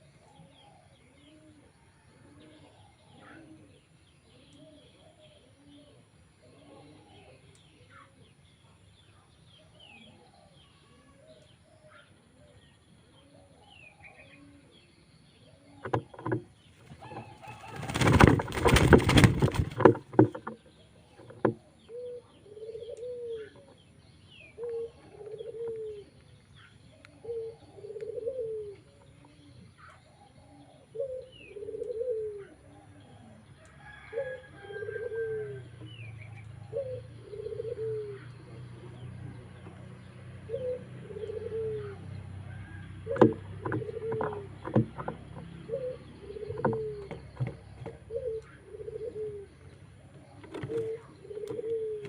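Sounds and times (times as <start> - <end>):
pigeon cooing: 0.0 - 8.4, 9.9 - 14.8, 15.5 - 23.8, 24.5 - 52.0
small birds chirping: 0.0 - 52.0
loud rustling burst: 17.2 - 20.3.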